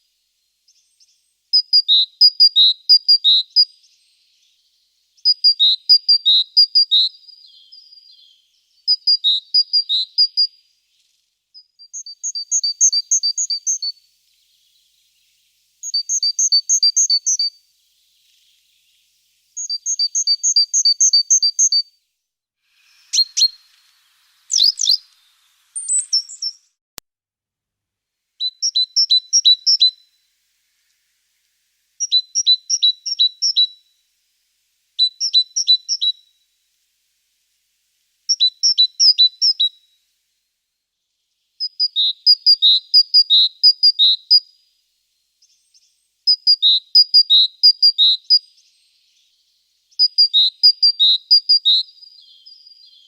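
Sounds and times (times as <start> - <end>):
songbird whistling: 0.7 - 14.9, 15.8 - 21.9, 22.9 - 23.7, 24.5 - 25.2, 25.8 - 26.7, 28.4 - 30.2, 32.0 - 33.9, 35.0 - 36.4, 38.3 - 40.0, 41.6 - 44.5, 45.4 - 53.0
high bird calls: 22.9 - 26.7.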